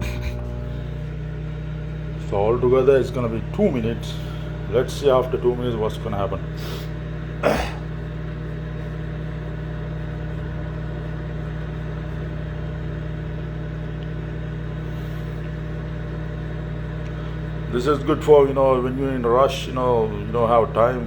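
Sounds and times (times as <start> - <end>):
microwave oven humming: 0.0 - 21.0.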